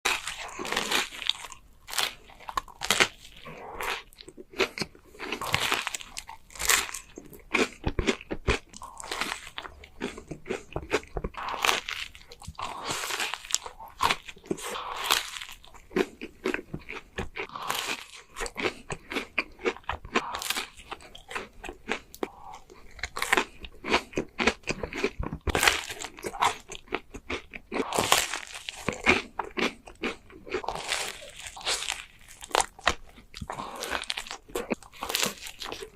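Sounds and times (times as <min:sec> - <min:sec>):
chewing: 0:00.1 - 0:35.9
crisp crunching bites: 0:00.1 - 0:35.9.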